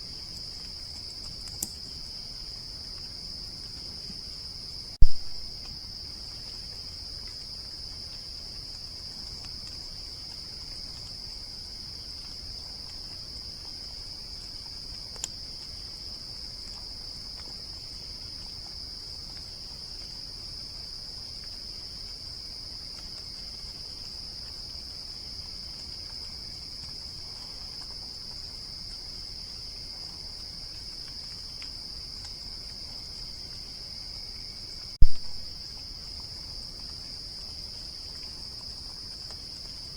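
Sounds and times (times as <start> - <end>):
insects trilling: 0.0 - 39.9
faint click: 1.0 - 1.9, 5.0 - 5.3, 15.2 - 15.4, 35.0 - 35.4.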